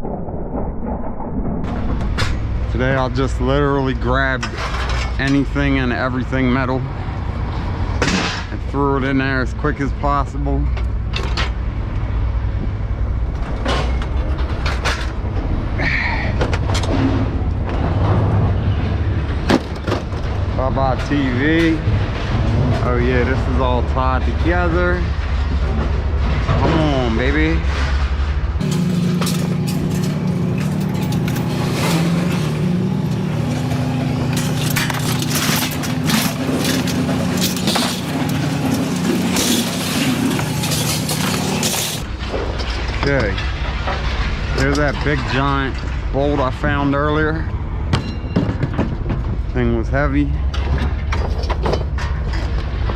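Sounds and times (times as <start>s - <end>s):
engine rumble: 0.0s - 52.9s
scrap metal clanging: 1.7s - 6.7s, 16.8s - 47.4s.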